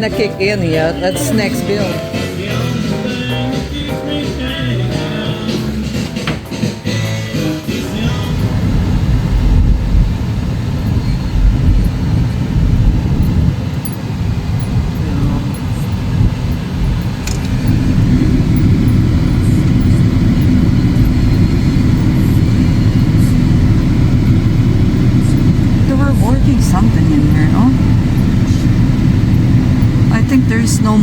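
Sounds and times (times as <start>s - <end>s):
road and engine rumble in car: 7.6s - 31.0s.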